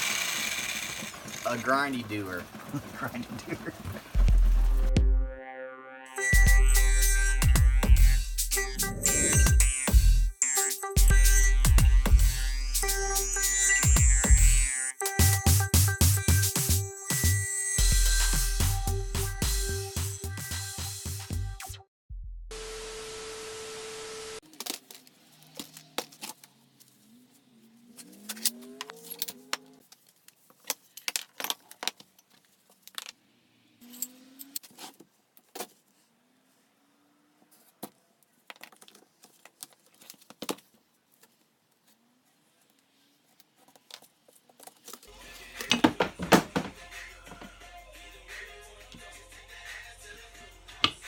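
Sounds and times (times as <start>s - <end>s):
music: 4.2s - 22.6s, 45.1s - 51.0s
steady hiss with held tone: 22.5s - 24.4s.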